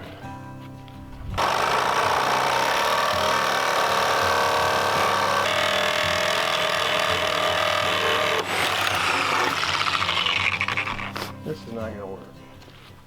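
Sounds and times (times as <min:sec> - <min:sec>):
reciprocating saw cutting metal: 0:01.4 - 0:11.3.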